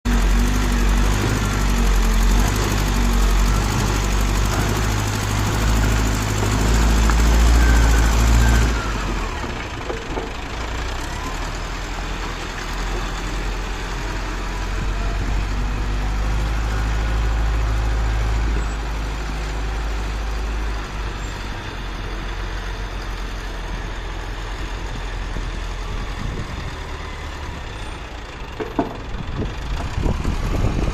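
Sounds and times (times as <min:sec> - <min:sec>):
tractor diesel engine running: 0:00.0 - 0:30.9.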